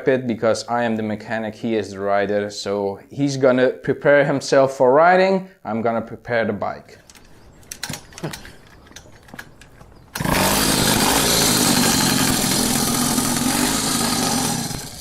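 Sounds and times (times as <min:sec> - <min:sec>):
faint handling clicks: 0:06.9 - 0:10.3
small motorcycle engine running: 0:07.4 - 0:15.0.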